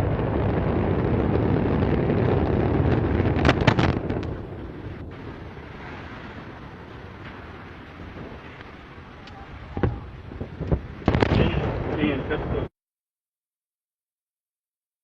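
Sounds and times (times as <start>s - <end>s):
rocket launch roar: 0.0s - 12.7s
sharp bangs: 3.3s - 4.4s, 6.9s - 12.4s.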